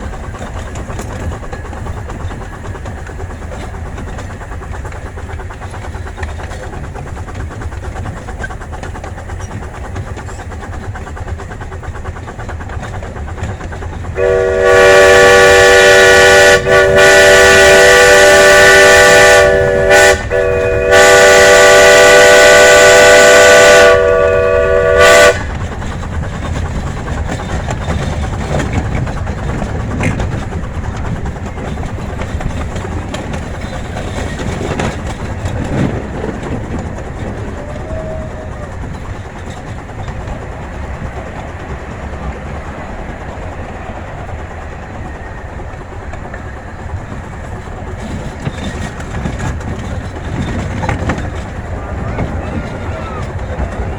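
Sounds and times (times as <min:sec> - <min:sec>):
miniature train rumbling on rails: 0:00.0 - 0:53.9
steam locomotive chime whistle: 0:14.2 - 0:25.6.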